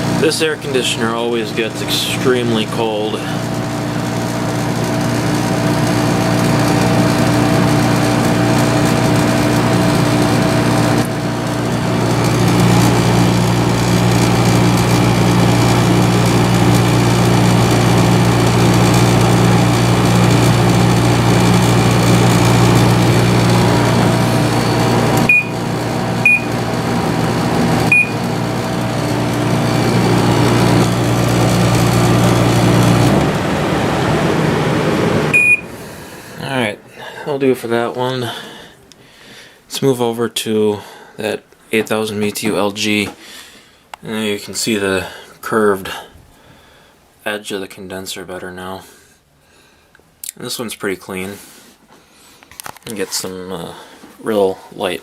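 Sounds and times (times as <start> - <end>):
air conditioner humming: 0.0 - 55.0
short high beeps: 25.3 - 25.6, 26.3 - 26.5, 27.9 - 28.2, 35.3 - 35.6.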